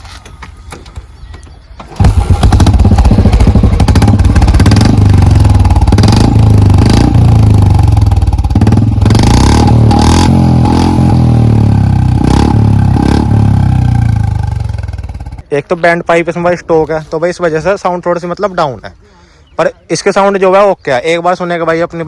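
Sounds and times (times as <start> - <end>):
motorcycle engine revving: 1.8 - 15.4.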